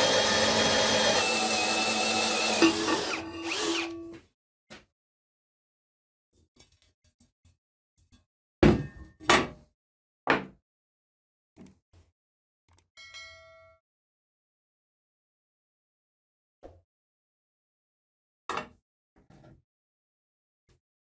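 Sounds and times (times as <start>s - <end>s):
power tool spinning down: 0.0s - 4.1s.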